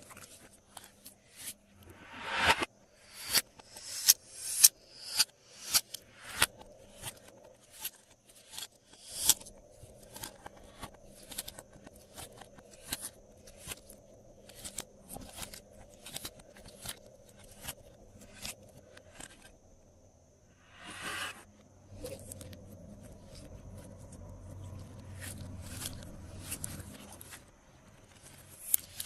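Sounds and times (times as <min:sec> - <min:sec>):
faint slime crackles: 0:22.0 - 0:29.0.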